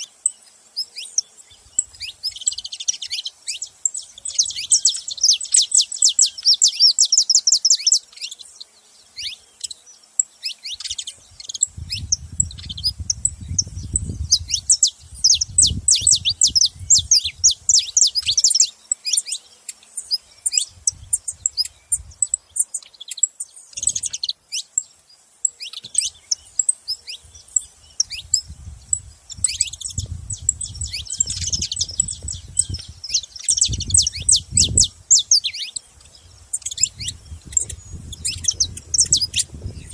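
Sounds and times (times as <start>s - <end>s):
finch chirping: 0.0s - 39.9s.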